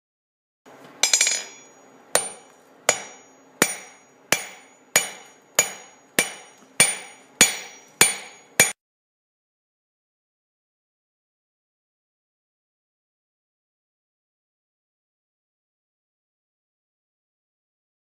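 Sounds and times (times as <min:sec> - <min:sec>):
hammer striking steel on anvil: 0:01.0 - 0:08.8.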